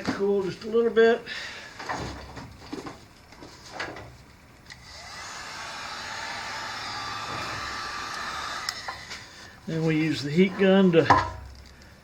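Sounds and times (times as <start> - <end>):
heat gun fan blowing: 4.7 - 11.0.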